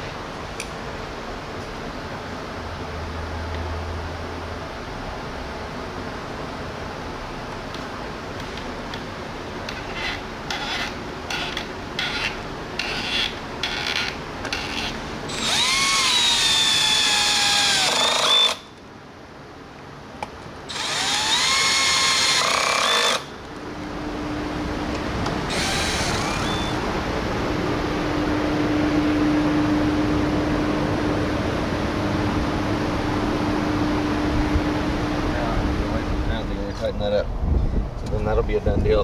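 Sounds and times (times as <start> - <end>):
electric drill motor whining: 13.7 - 18.7, 20.7 - 23.3, 25.5 - 26.8
electric drill trigger blips: 15.3 - 18.7, 20.7 - 23.3, 25.5 - 26.8.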